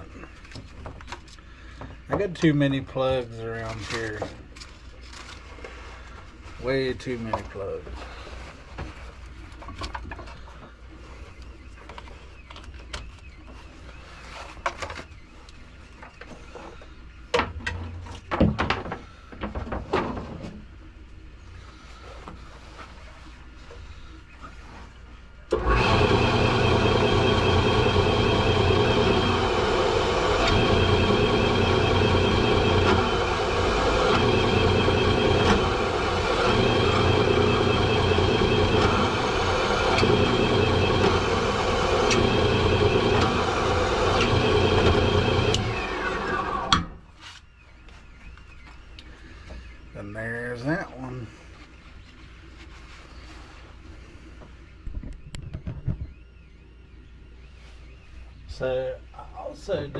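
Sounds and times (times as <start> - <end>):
machine motor humming and whining: 25.5 - 47.0.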